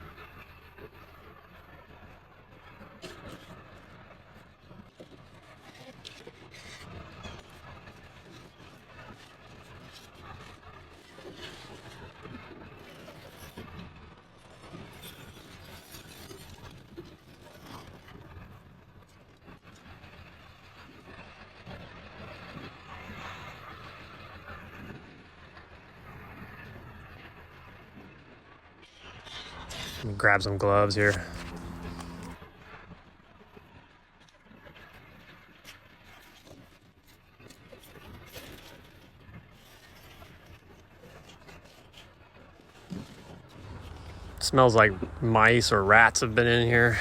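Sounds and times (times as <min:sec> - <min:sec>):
low background hum: 0:29.0 - 0:32.4, 0:42.6 - 0:47.0
road noise: 0:29.2 - 0:32.4, 0:43.5 - 0:47.0
vehicle engine rumble: 0:29.2 - 0:32.4, 0:43.5 - 0:47.0.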